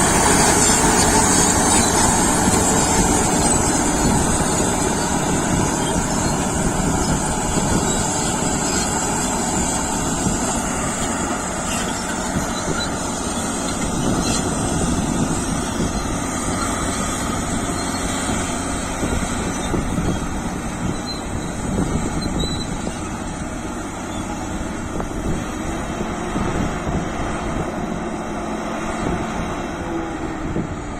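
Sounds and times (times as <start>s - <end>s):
bulldozer diesel engine droning: 0.0s - 30.9s.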